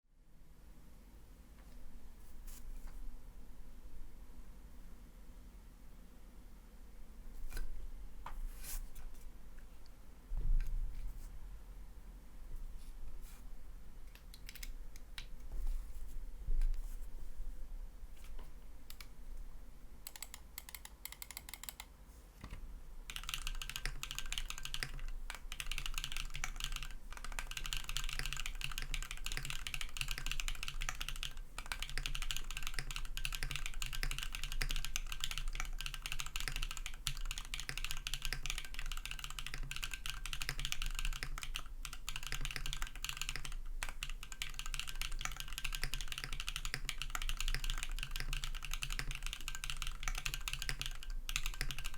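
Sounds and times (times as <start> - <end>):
typing on a keyboard: 14.2 - 15.3, 20.0 - 21.9, 23.1 - 51.9.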